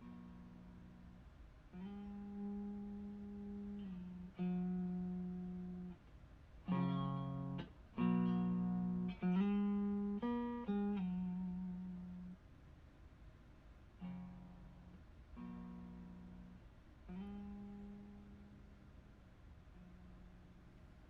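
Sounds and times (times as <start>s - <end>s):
overdriven electric guitar notes: 1.8s - 6.0s, 6.7s - 12.4s, 14.0s - 18.8s
ringing guitar chords: 1.8s - 6.0s, 6.7s - 12.4s, 15.4s - 18.9s.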